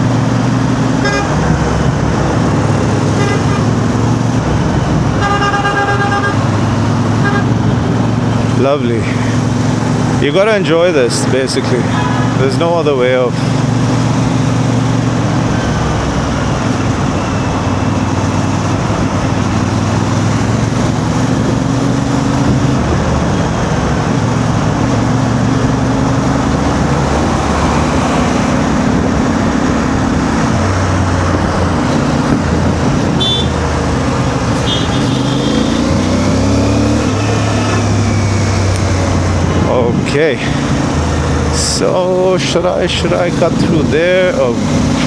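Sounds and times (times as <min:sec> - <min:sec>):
motorcycle engine revving: 0:00.0 - 0:45.0
surrounding traffic noise: 0:00.0 - 0:45.0.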